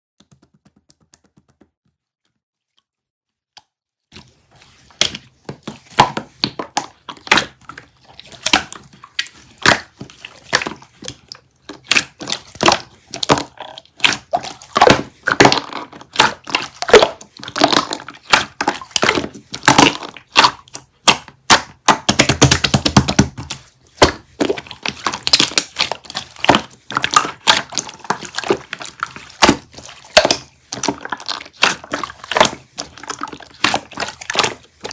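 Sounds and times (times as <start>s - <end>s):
taps and knocks of handling: 0.2s - 2.0s.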